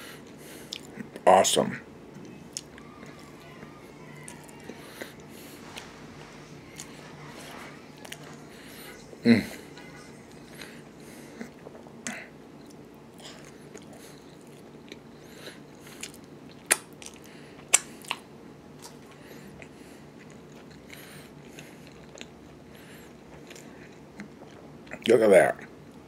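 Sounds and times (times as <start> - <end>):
person chewing: 0.2 - 1.2, 2.5 - 3.4, 6.7 - 25.1.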